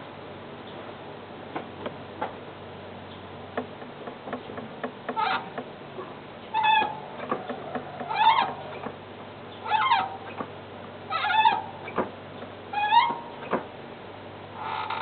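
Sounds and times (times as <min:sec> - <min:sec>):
clutch squealing: 0:06.4 - 0:09.0.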